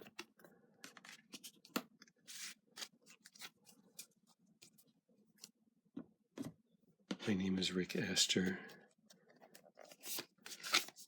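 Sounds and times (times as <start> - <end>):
cards sliding rustle: 0.9 - 4.8, 9.1 - 11.0.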